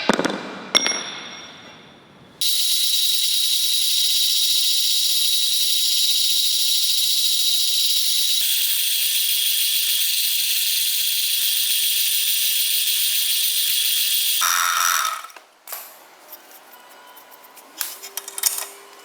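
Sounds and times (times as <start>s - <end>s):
angle grinder cutting steel: 2.4s - 15.4s.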